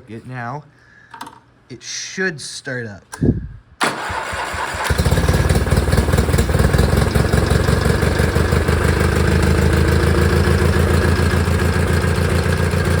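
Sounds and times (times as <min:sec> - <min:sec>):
lawn mower engine running: 0:03.8 - 0:13.0.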